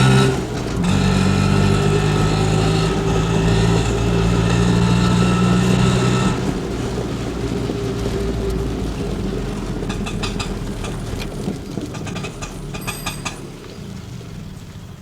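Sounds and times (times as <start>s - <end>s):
auto rickshaw engine rumble: 0.0s - 15.0s
high-pitched brake squeaks: 12.1s - 13.6s.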